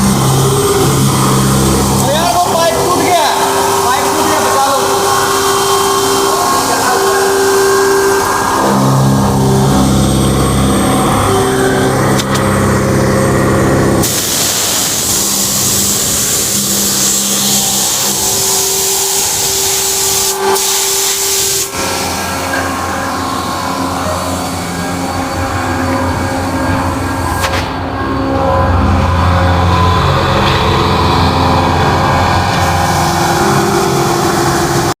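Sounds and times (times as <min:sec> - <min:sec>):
machine hum and whine: 0:00.0 - 0:35.0
spraying hiss: 0:14.0 - 0:22.2.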